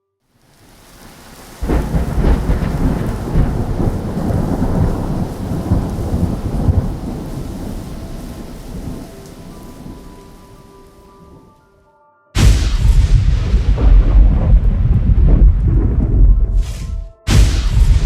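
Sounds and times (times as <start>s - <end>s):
thunder crack and rumble: 1.6s - 9.1s, 12.4s - 18.0s.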